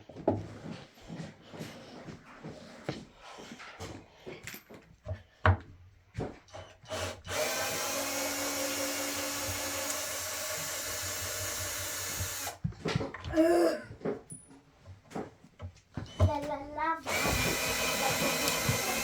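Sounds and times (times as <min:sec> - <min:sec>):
power drill running: 0:06.9 - 0:12.6, 0:17.0 - 0:19.0.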